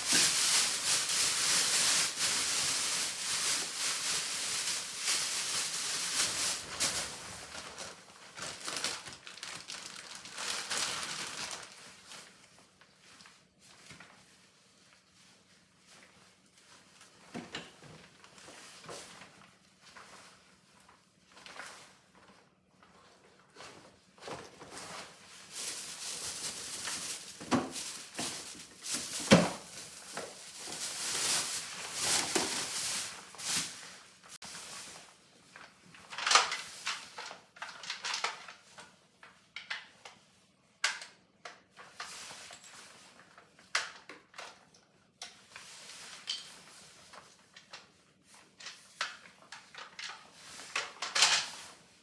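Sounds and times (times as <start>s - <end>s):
rustling: 0.0s - 12.4s, 23.6s - 37.2s.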